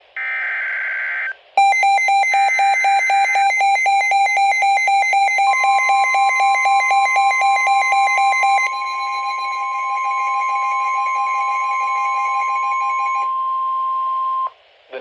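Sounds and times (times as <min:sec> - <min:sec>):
rapid alarm beeps: 0:01.6 - 0:14.5
screechy data tones: 0:05.2 - 0:13.3.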